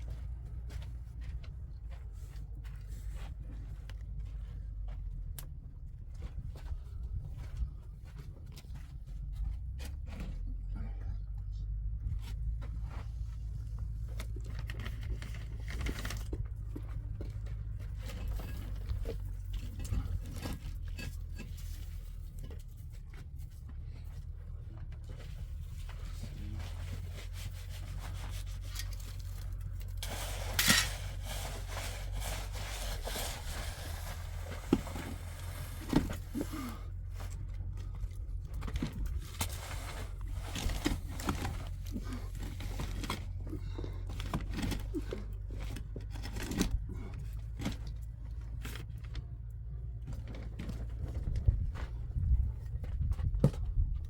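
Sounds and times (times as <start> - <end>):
steady low rumble: 0.0 - 54.0
scraping and rubbing on wood: 26.6 - 36.8.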